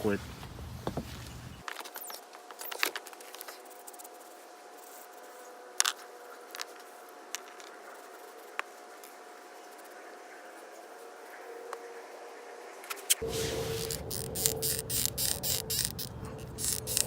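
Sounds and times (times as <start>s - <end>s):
faint steady hum: 0.0s - 17.0s
small metal parts clicking: 13.8s - 17.0s.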